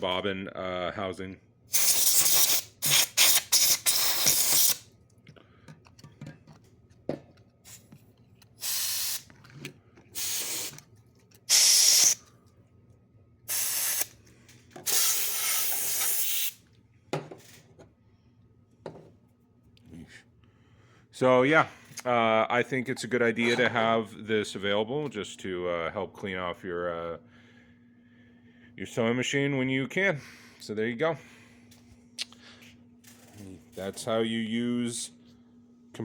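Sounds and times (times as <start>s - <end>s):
compressed air spray hissing: 1.7s - 4.8s, 8.6s - 9.3s, 10.2s - 10.8s, 11.5s - 12.2s, 13.5s - 14.2s, 14.8s - 16.6s.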